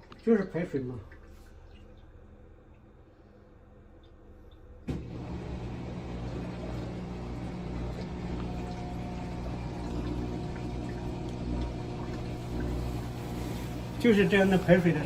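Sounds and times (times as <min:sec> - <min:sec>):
flowing water: 0:00.0 - 0:02.8, 0:04.5 - 0:15.0
drain pump humming: 0:03.8 - 0:15.0.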